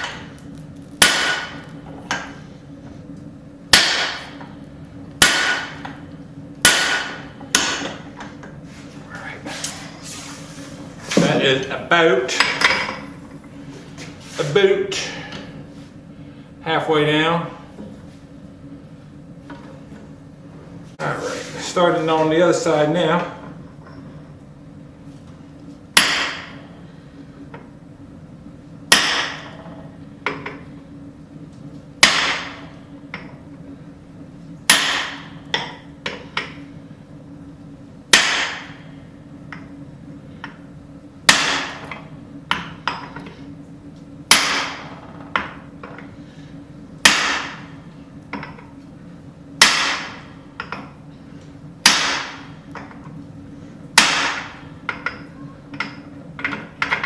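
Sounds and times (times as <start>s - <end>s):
hammer striking punch into steel: 1.0s - 2.3s, 3.7s - 4.4s, 5.2s - 5.9s, 6.6s - 8.0s, 26.0s - 26.6s, 28.9s - 29.6s, 32.0s - 32.6s, 34.7s - 35.7s, 38.1s - 38.8s, 41.3s - 41.8s, 44.3s - 44.8s, 47.0s - 47.6s, 49.6s - 50.2s, 51.8s - 52.5s, 54.0s - 54.6s.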